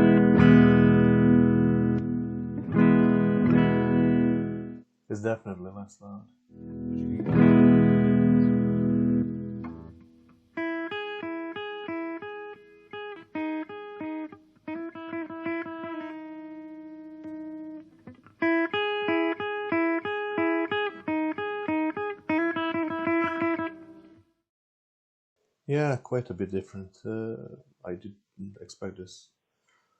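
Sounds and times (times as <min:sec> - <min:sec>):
electric guitar chords and riff: 0:00.0 - 0:04.8, 0:06.5 - 0:24.2.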